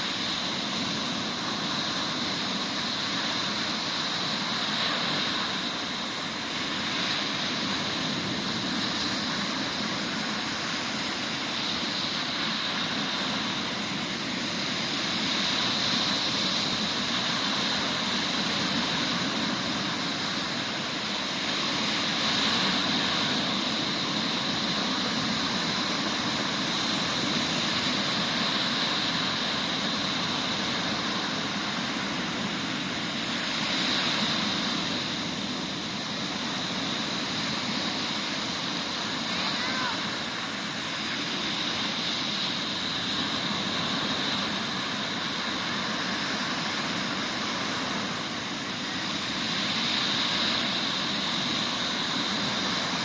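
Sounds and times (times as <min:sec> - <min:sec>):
sea waves breaking on beach: 0:00.0 - 0:53.0.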